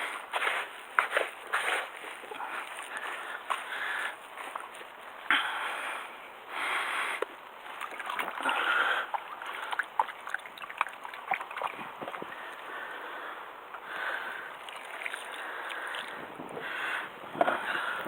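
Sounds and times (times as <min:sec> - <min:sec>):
water splashing against hull: 0:07.7 - 0:12.6, 0:14.6 - 0:16.7.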